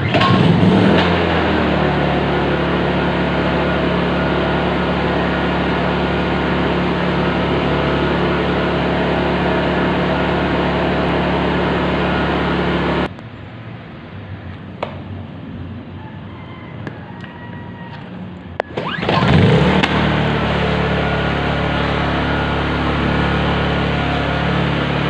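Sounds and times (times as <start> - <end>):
generator engine running: 0.0 - 13.1, 18.5 - 25.0.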